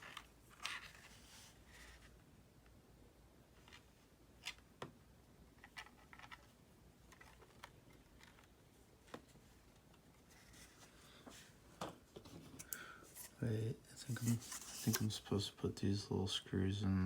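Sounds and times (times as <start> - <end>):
faint clicks of small parts: 5.6 - 10.0, 12.2 - 13.3.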